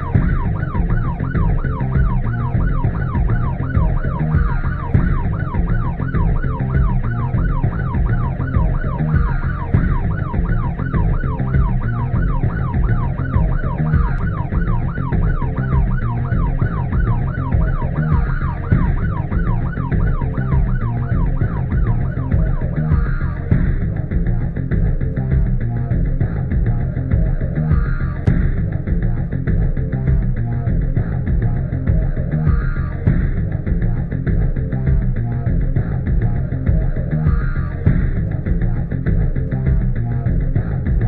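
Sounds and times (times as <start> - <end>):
siren yelping: 0.0 - 23.8, 27.3 - 28.4, 31.1 - 33.3, 35.4 - 38.1
music with heavy low beat: 0.0 - 41.0.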